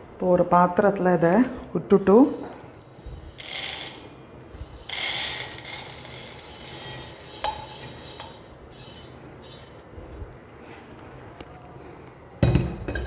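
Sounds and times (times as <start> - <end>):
spoon scraping and clinking metal: 2.3 - 9.9
grains rushing into metal vessel: 2.8 - 9.8.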